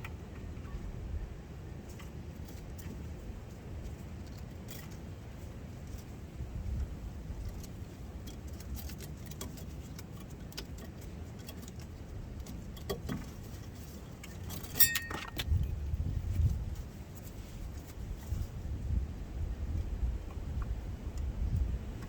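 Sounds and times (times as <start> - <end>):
metal clicks and clinks: 14.2 - 15.5
ringing metallic clink: 14.7 - 15.4.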